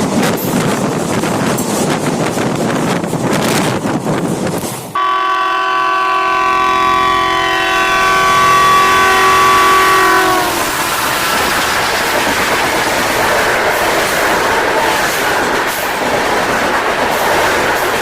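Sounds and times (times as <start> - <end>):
passing train rushing: 0.0 - 18.0
locomotive horn blast: 5.0 - 11.0.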